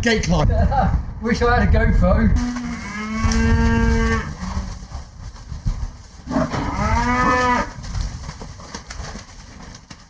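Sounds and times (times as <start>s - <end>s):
cattle mooing: 2.4s - 4.7s, 6.3s - 7.7s.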